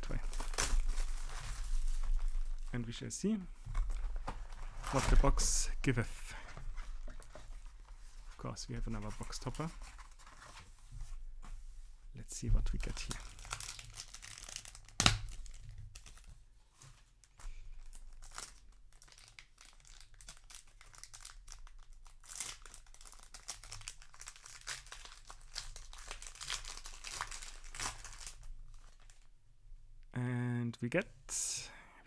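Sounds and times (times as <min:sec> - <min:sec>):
foil wrapper tearing and crinkling: 0:00.0 - 0:02.7, 0:12.8 - 0:16.3, 0:17.5 - 0:29.3.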